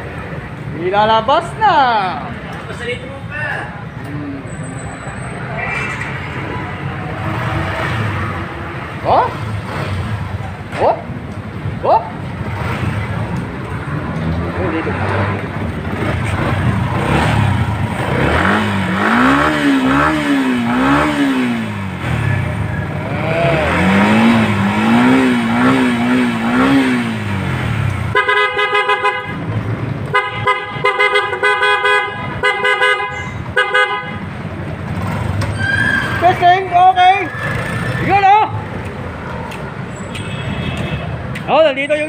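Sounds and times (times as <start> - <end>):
steady background noise: 0.0 - 42.0
motorcycle horn blasts: 28.1 - 29.4, 30.1 - 34.3.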